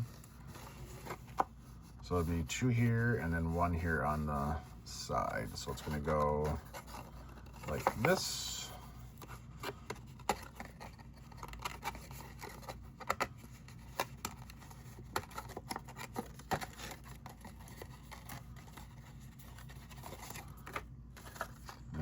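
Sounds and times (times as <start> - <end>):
paper pieces tapping and rustling: 5.6 - 8.5, 9.2 - 21.8.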